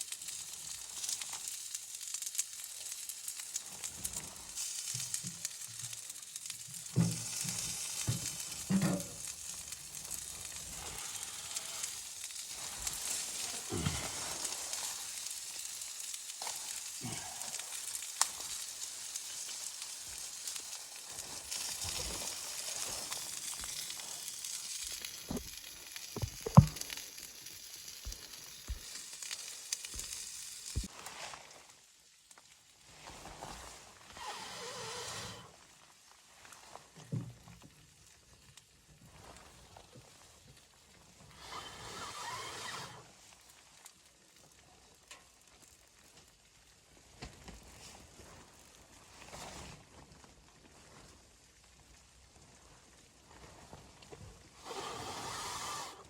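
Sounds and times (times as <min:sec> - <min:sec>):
food sizzling in a pan: 0:00.0 - 0:35.0.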